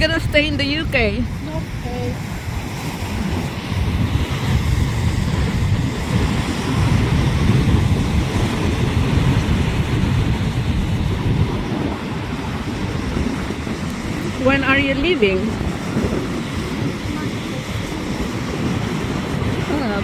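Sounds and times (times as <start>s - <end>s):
surf breaking: 0.0s - 20.0s
wind buffeting microphone: 0.0s - 20.0s.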